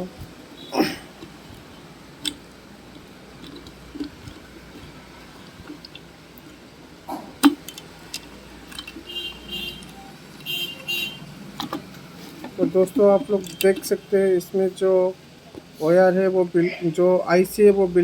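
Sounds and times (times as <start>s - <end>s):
plastic connectors clicking: 13.0s - 13.9s.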